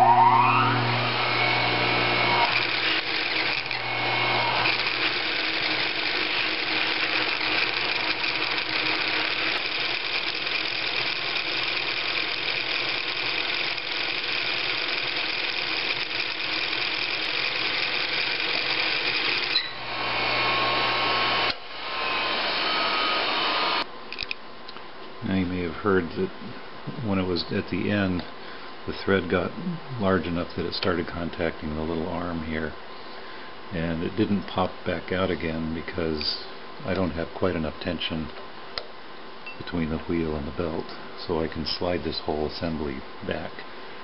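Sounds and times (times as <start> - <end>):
sewing machine whirring: 0.0 - 21.6
bobbin winder whine: 0.0 - 23.9.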